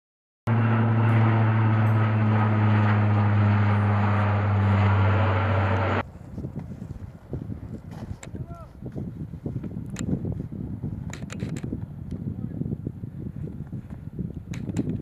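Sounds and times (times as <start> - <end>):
aircraft engines droning: 0.5 - 6.0.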